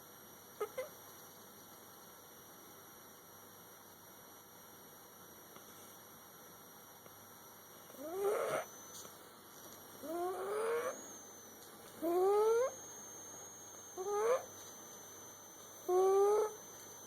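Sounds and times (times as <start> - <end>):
cat snoring: 8.0 - 8.8, 10.1 - 11.1.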